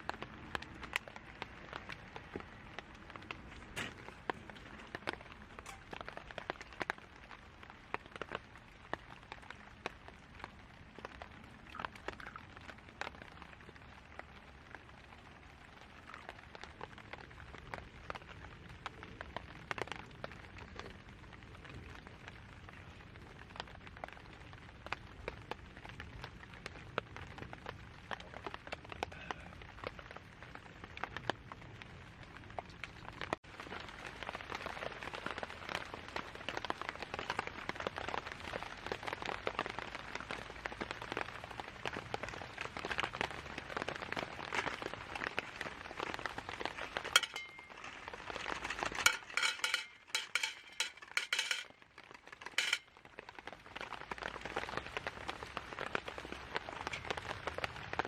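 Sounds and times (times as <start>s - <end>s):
fire crackling: 0.0s - 58.0s
metal utensils clinking on skillet: 47.0s - 51.7s, 52.4s - 52.9s.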